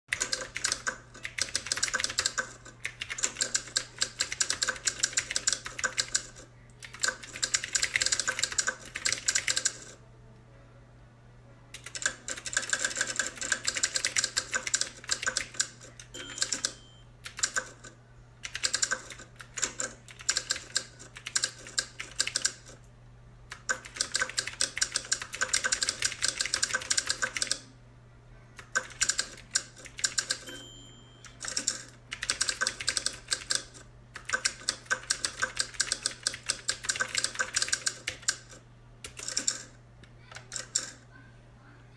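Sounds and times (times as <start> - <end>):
brief high tone: 16.2 - 17.1, 30.5 - 31.3.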